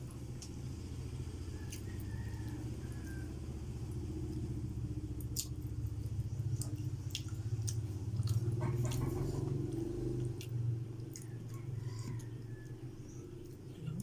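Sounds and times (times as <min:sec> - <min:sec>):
steady low hum: 0:00.0 - 0:14.0
chewing with mouth clicks: 0:03.9 - 0:14.0.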